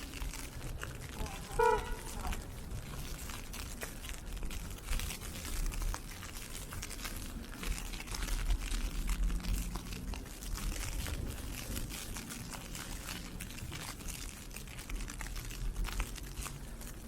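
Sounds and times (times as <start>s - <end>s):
footsteps crunching through snow: 0.0s - 8.8s
wind rumble on microphone: 0.0s - 17.0s.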